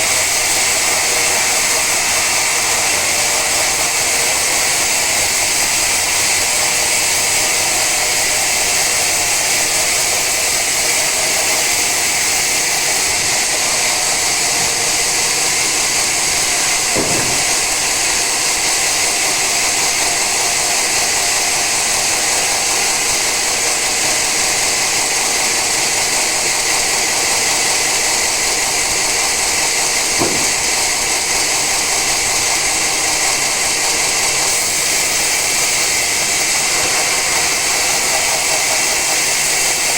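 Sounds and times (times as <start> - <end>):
saw cutting through log: 0.0 - 39.9
brief knocks: 16.9 - 18.1, 30.2 - 31.0.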